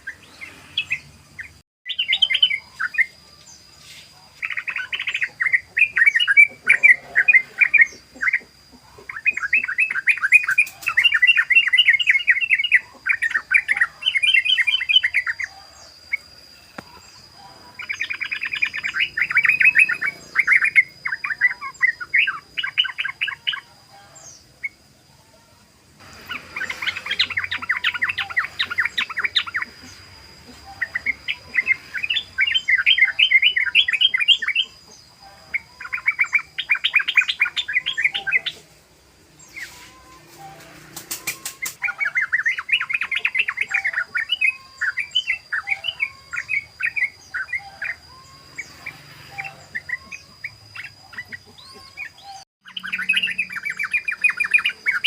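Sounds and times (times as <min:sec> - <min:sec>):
bird chattering song: 0:00.0 - 0:24.9, 0:26.0 - 0:55.0.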